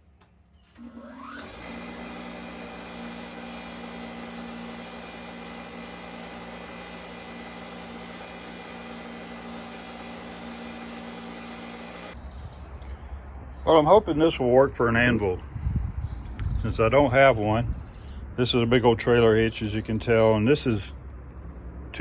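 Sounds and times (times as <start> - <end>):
electric motor whirring: 0.8 - 12.2.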